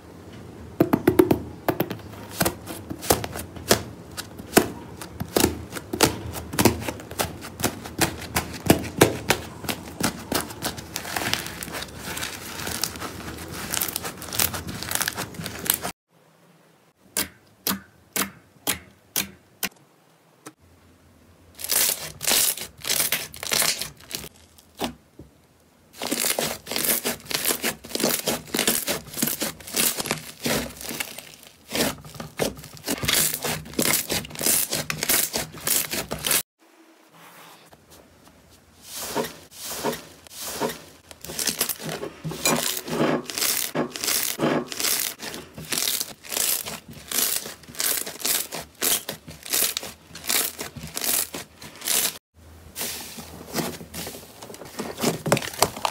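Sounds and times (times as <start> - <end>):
slime crackling and popping: 26.0 - 36.4, 43.3 - 52.2
hands squeezing slime: 43.3 - 52.2.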